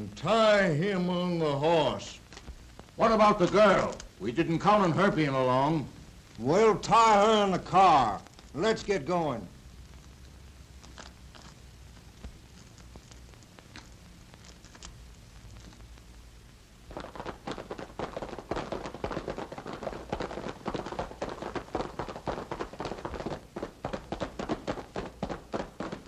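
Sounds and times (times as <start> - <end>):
low background hum: 0.0 - 26.0
galloping horse hoofbeats: 16.9 - 26.0.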